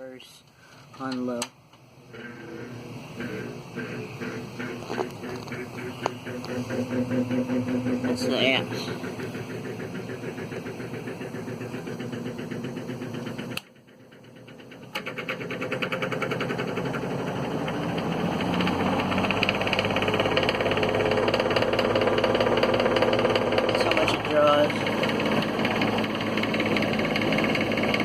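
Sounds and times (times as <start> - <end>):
box fan rattling: 0.9 - 28.0.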